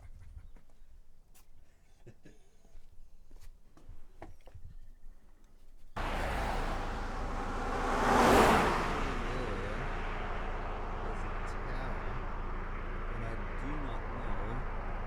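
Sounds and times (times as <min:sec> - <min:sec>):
road traffic noise: 0:06.0 - 0:15.0
vehicle passing: 0:06.0 - 0:15.0.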